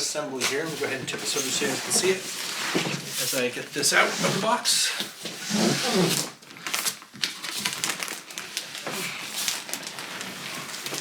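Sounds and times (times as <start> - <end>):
cardboard crackling and tearing: 5.6 - 11.0.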